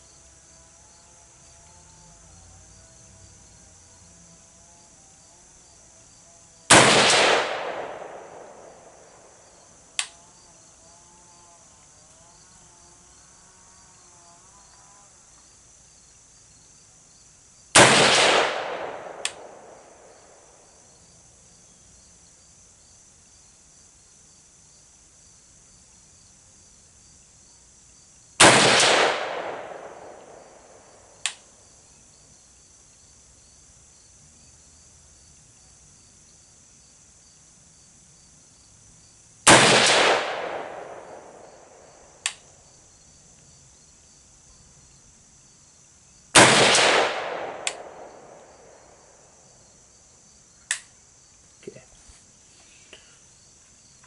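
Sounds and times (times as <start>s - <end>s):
insects trilling: 0.0s - 6.8s, 7.6s - 17.8s, 29.3s - 54.0s
rifle shots with echo: 6.7s - 9.4s, 17.8s - 20.5s, 28.4s - 31.1s, 39.5s - 41.9s, 46.4s - 49.1s
sharp clicks: 10.0s - 10.2s, 42.2s - 42.4s, 47.6s - 47.9s, 50.7s - 50.9s.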